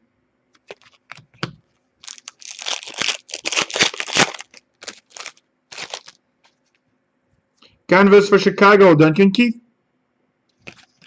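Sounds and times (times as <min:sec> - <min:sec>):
foil wrapper crinkling: 0:00.6 - 0:06.2, 0:10.6 - 0:11.0.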